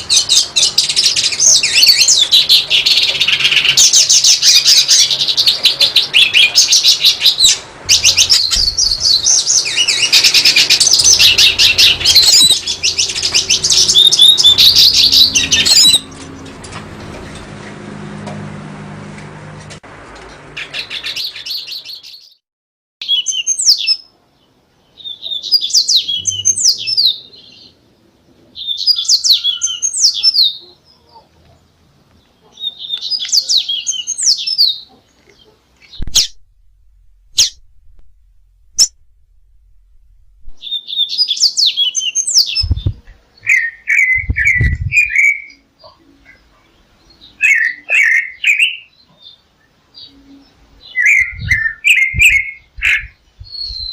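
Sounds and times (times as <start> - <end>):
songbird twittering: 0.0 - 16.3, 32.2 - 36.4, 37.2 - 37.9, 39.7 - 53.9
dull low thuds: 8.5 - 9.2, 36.0 - 40.6, 42.6 - 43.2, 44.2 - 45.0.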